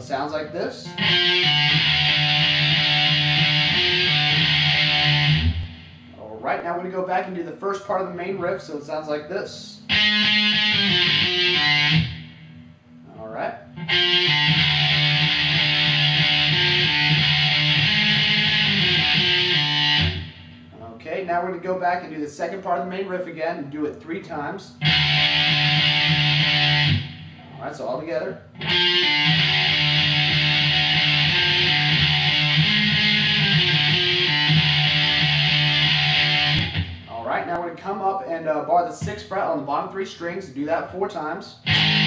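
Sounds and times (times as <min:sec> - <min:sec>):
distorted electric guitar riff: 0:00.8 - 0:06.2, 0:09.8 - 0:20.8, 0:24.7 - 0:37.6, 0:41.6 - 0:42.0.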